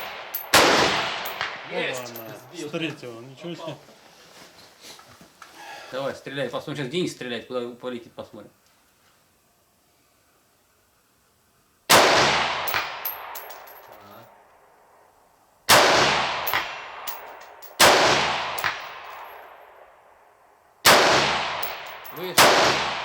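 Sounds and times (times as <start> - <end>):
rifle shots with echo: 0.0 - 1.7, 11.9 - 13.4, 15.7 - 19.4, 20.9 - 23.0.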